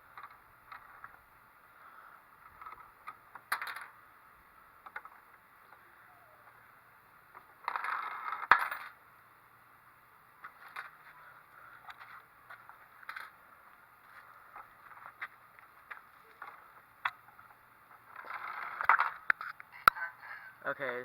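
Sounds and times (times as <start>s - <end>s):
coins and plastic parts rattling: 2.4s - 4.0s, 11.8s - 13.4s, 18.1s - 19.5s.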